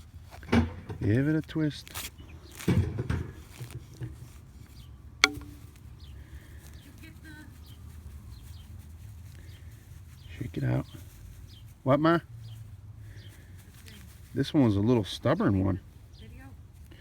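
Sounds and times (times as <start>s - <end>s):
sharp click: 5.2s - 5.7s
muffled rustle: 6.4s - 15.1s.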